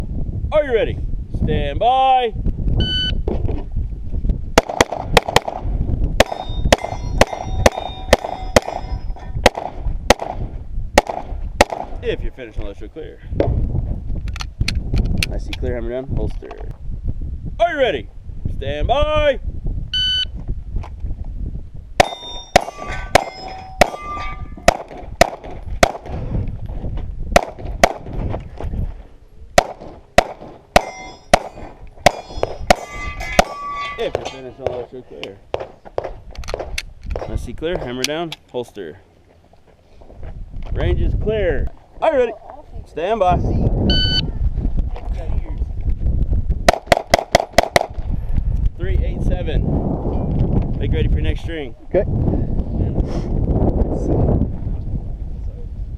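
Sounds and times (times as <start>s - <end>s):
pistol shots: 4.6s - 5.6s, 6.2s - 10.4s, 11.0s - 12.0s, 22.0s - 26.1s, 27.4s - 28.1s, 29.6s - 33.6s, 46.7s - 48.0s
steel targets ringing: 6.2s - 9.2s, 22.0s - 24.7s, 30.7s - 34.6s.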